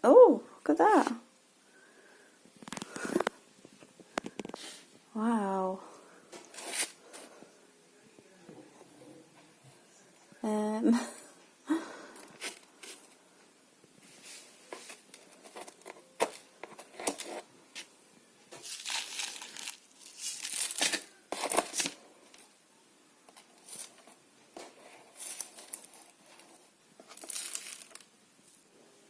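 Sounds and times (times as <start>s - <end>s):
crinkly rustling: 6.1s - 7.5s, 14.0s - 17.9s, 18.5s - 22.5s, 23.3s - 28.7s.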